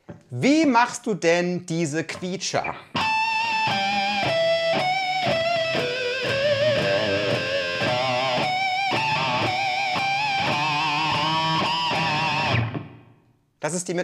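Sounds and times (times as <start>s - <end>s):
electric guitar squealing harmonics: 3.0s - 12.9s.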